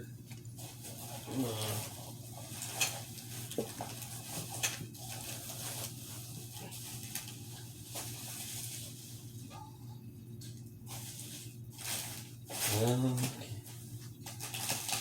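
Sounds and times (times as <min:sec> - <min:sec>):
steady low hum: 0:00.0 - 0:14.9
packaging rustling and clicking: 0:00.3 - 0:08.9, 0:14.2 - 0:15.0.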